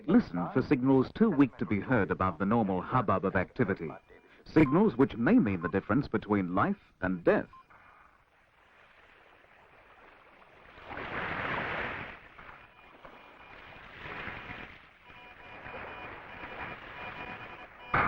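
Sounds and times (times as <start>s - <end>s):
radio static hiss: 0.0s - 8.2s, 12.1s - 18.0s.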